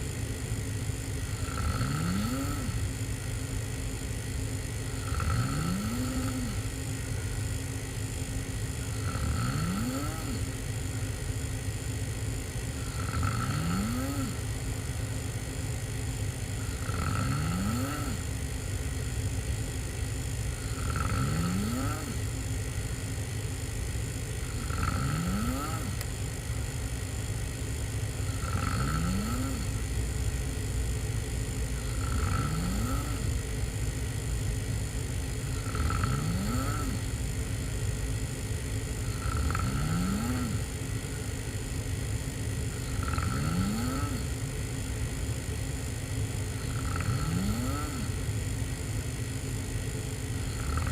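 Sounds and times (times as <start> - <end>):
person snoring: 1.0 - 3.4, 4.2 - 10.8, 12.5 - 15.3, 16.5 - 19.0, 20.4 - 23.1, 24.3 - 26.8, 28.1 - 30.5, 31.6 - 33.7, 35.3 - 37.3, 38.9 - 41.6, 42.6 - 44.4, 46.4 - 48.3, 50.3 - 50.9.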